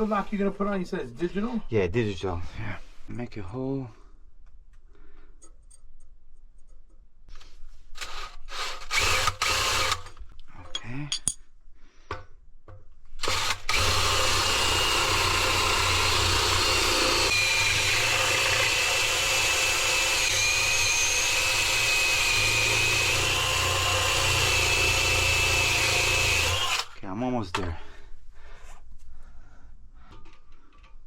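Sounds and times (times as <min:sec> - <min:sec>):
power drill boring into metal: 0:08.0 - 0:10.2, 0:13.2 - 0:27.0.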